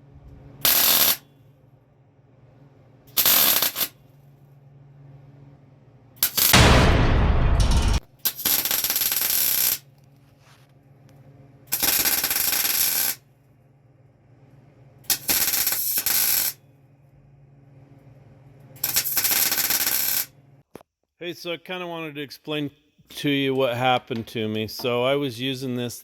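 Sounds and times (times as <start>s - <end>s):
steady low hum: 0.0s - 8.3s, 9.8s - 12.6s, 13.2s - 20.8s
welder crackling: 0.6s - 1.2s, 3.1s - 4.0s, 6.2s - 6.9s, 7.5s - 9.9s, 11.7s - 13.2s, 15.1s - 16.6s, 18.8s - 20.4s.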